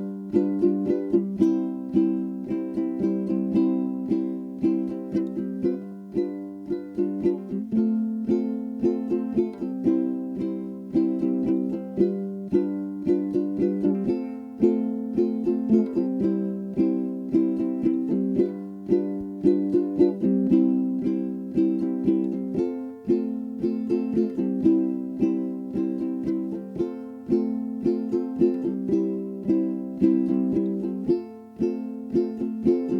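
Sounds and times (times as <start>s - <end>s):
plucked string instrument tune: 0.0s - 32.9s.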